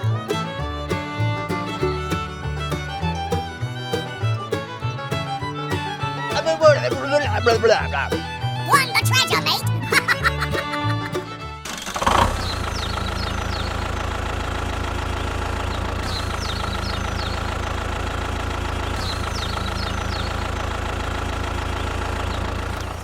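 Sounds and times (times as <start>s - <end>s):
tractor engine idling with knock: 11.6s - 23.0s
high bird chirps: 12.4s - 13.8s, 15.7s - 17.5s, 19.0s - 20.7s.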